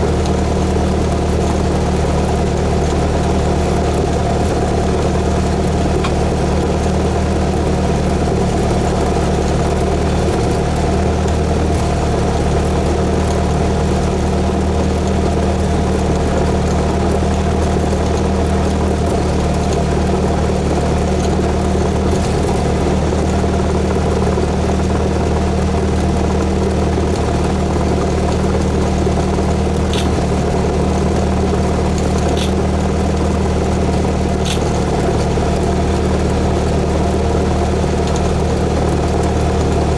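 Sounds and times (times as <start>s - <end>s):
light aircraft engine droning: 0.0s - 39.9s
faint ticks: 29.8s - 30.5s, 32.0s - 32.8s, 34.4s - 34.9s.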